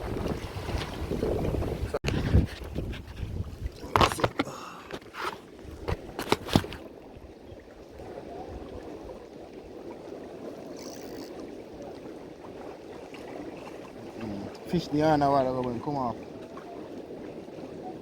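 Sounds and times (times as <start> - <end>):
sea water washing: 0.0 - 18.0
sharp scrapes and knocks: 3.9 - 6.8.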